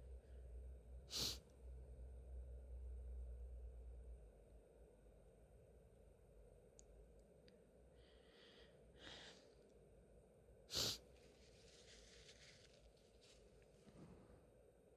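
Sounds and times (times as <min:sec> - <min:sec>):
person breathing: 0:01.1 - 0:01.4, 0:07.9 - 0:09.7, 0:10.7 - 0:11.0
woman sneezing: 0:10.7 - 0:11.0.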